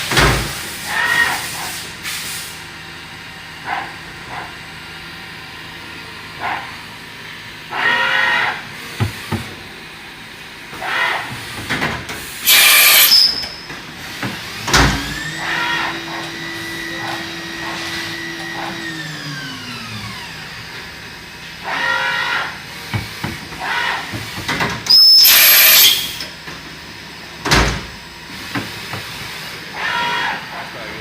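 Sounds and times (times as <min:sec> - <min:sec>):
air hiss blast: 0:00.4 - 0:02.6, 0:12.2 - 0:13.4, 0:24.9 - 0:26.2
short mechanical whirs: 0:12.4 - 0:20.4, 0:24.9 - 0:26.3
spindle whine: 0:12.5 - 0:23.8.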